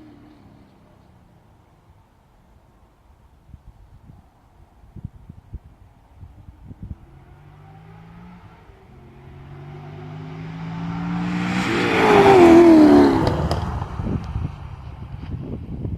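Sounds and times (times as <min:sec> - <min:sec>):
car engine passing by: 0:06.5 - 0:15.6.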